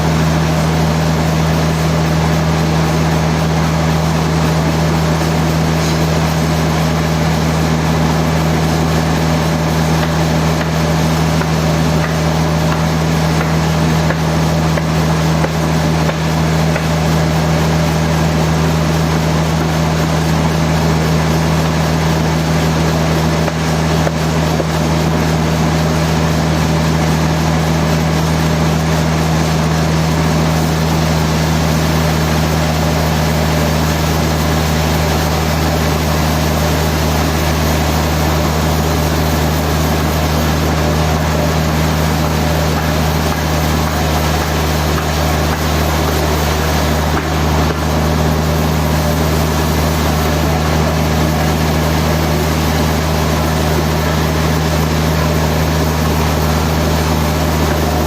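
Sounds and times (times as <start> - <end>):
heavy machinery droning: 0.0 - 58.0.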